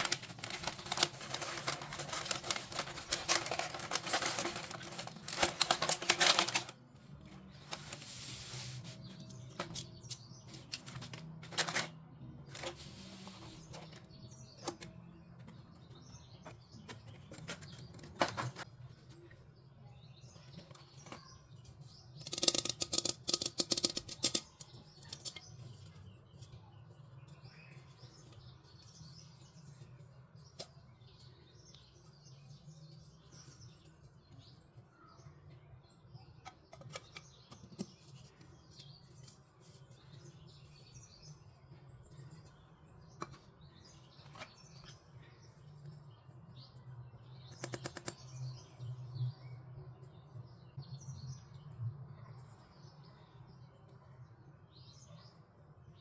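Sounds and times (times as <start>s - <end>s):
plastic packaging crinkling: 0.0s - 6.8s
rapid clicking of toy pieces: 22.2s - 24.6s.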